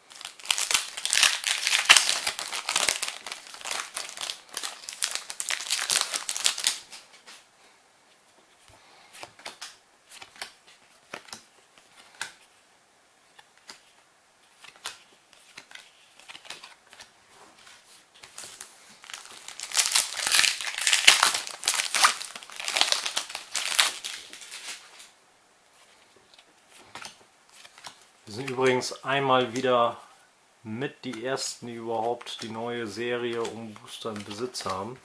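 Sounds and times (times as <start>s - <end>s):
foil wrappers crinkling: 0.0s - 7.0s, 18.3s - 25.0s
foil packs tearing open: 0.1s - 6.8s, 19.0s - 24.6s.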